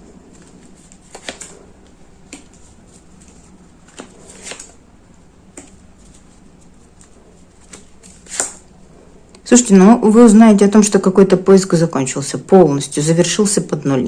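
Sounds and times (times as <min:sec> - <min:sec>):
cards slapping and rustling: 0:00.2 - 0:04.8, 0:05.5 - 0:08.7.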